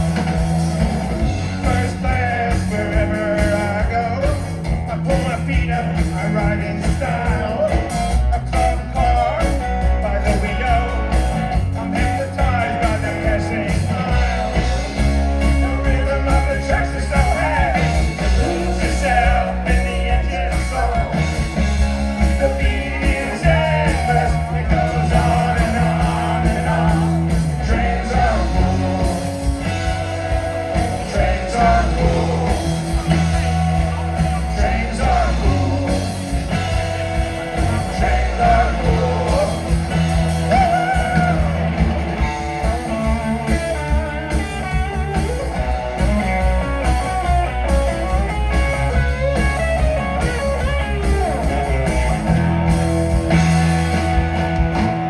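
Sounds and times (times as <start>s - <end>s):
bass guitar: 0.0s - 55.0s
drums keeping a steady beat: 0.0s - 55.0s
electric guitar: 0.0s - 55.0s
person singing: 15.5s - 21.5s, 22.2s - 30.0s, 30.8s - 41.8s.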